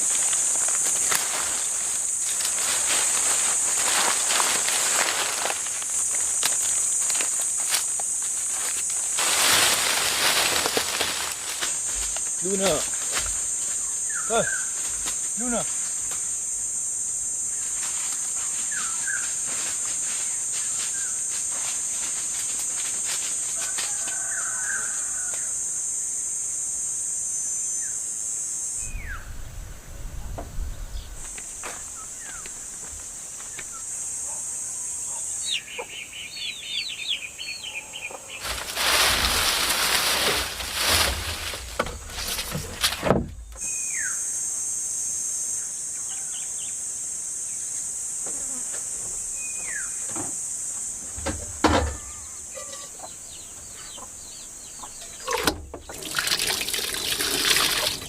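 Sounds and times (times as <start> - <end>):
high-pitched insect drone: 38.4 - 53.3.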